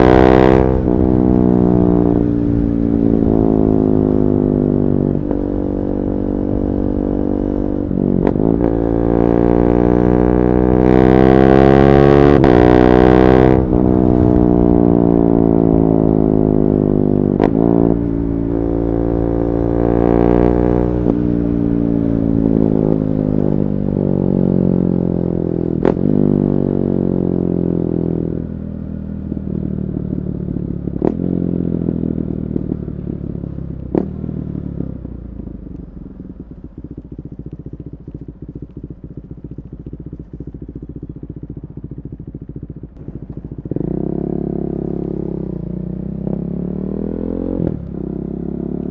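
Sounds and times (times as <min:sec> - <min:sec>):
motorcycle engine revving down: 0:00.0 - 0:26.9, 0:36.2 - 0:48.9
exhaust cracks: 0:35.7 - 0:43.8.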